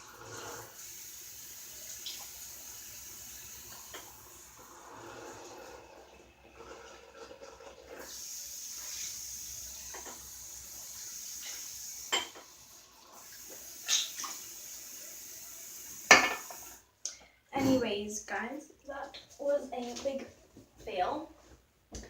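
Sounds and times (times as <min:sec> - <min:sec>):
tap water running into sink: 0:00.0 - 0:16.8.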